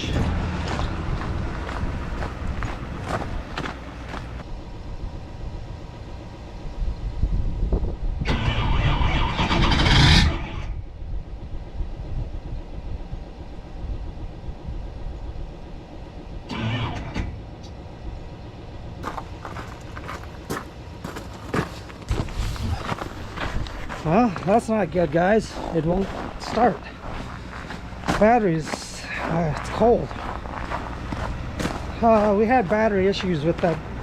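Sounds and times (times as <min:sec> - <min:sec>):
diesel engine starter cranking: 0:08.2 - 0:10.7, 0:16.4 - 0:18.0.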